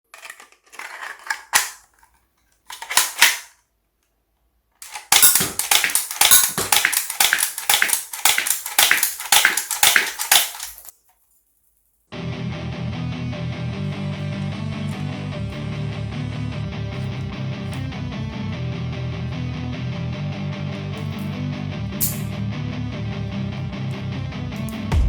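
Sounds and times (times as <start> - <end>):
toy pistol firing snaps: 4.8 - 10.9
toy pistol mechanism clicks: 4.8 - 10.9
music: 12.1 - 25.0.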